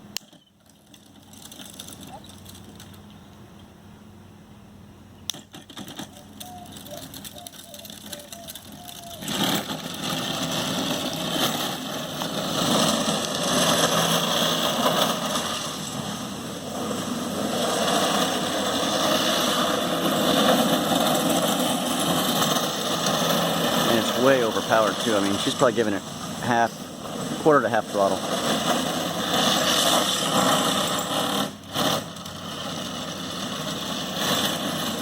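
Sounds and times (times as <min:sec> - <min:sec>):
hard wheels scraping on concrete: 0:00.0 - 0:03.0, 0:05.3 - 0:35.0
clicks: 0:05.3 - 0:09.5.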